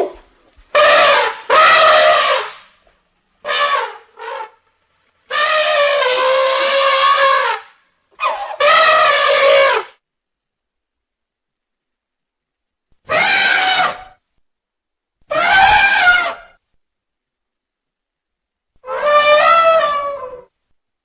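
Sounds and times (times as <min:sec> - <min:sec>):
elephant-like trumpeting calls: 0:00.0 - 0:02.7, 0:03.4 - 0:04.7, 0:05.3 - 0:10.0, 0:13.1 - 0:14.2, 0:15.3 - 0:16.6, 0:18.8 - 0:20.5.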